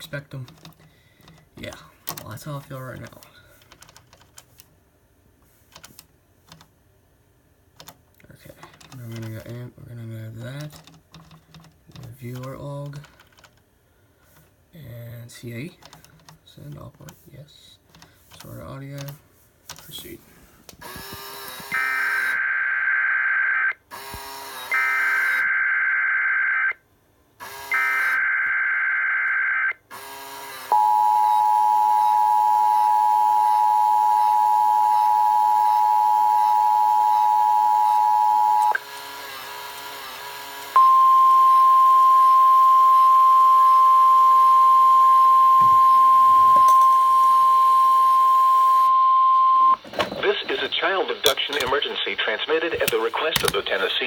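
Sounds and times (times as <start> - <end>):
two-tone attention signal: 40.8 - 50.7.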